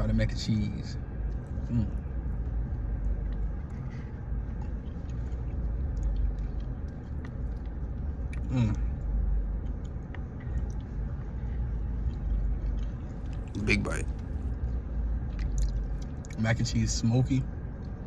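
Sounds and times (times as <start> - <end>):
low steady rumble: 0.0 - 18.0
person chewing food: 1.3 - 13.6, 14.2 - 16.4.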